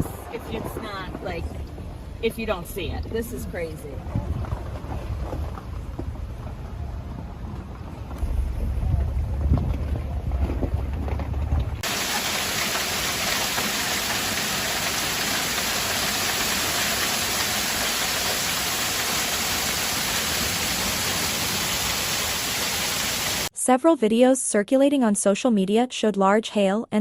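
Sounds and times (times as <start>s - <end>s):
wind buffeting microphone: 0.0s - 11.9s
heavy rain pouring: 11.8s - 23.5s.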